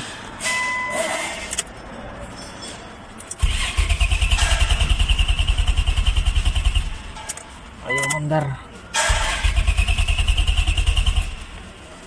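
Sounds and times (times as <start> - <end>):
starter cranking engine: 3.4 - 7.1, 9.1 - 11.6.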